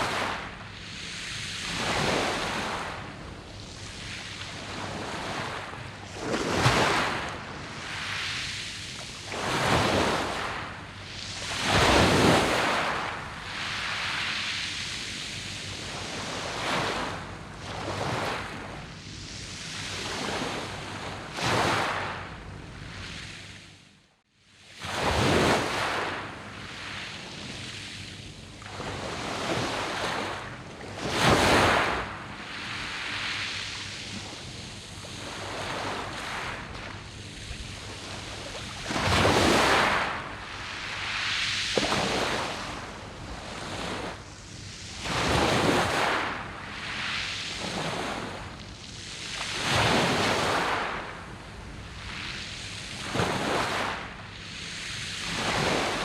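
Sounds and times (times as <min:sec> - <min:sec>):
waves breaking on pebble beach: 0:01.6 - 0:08.5, 0:09.2 - 0:10.8, 0:11.4 - 0:14.5, 0:24.8 - 0:27.0, 0:31.0 - 0:44.2, 0:44.9 - 0:48.4, 0:49.4 - 0:51.3, 0:52.9 - 0:54.1, 0:55.2 - 0:56.0.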